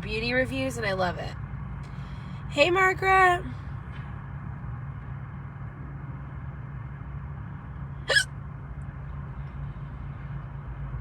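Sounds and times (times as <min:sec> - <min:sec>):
person hiccuping: 0:08.1 - 0:08.3.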